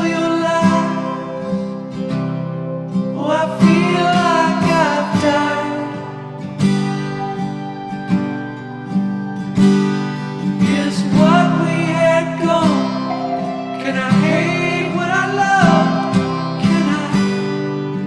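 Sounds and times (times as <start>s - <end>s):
acoustic guitar strumming: 0.0s - 18.0s
wordless singing: 10.7s - 17.8s.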